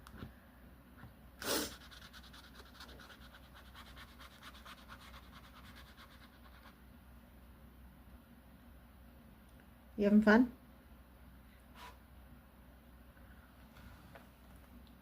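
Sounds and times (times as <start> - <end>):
colouring pencil scratching paper: 1.6 - 6.7.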